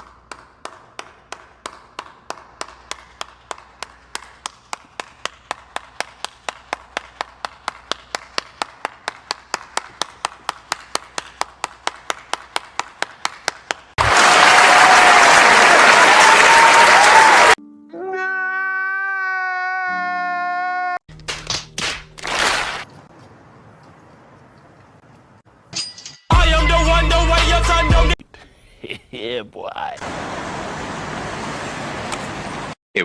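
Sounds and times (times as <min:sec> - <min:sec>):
single hand claps: 0:00.0 - 0:14.0, 0:21.2 - 0:22.7
crowd applause: 0:05.6 - 0:17.6.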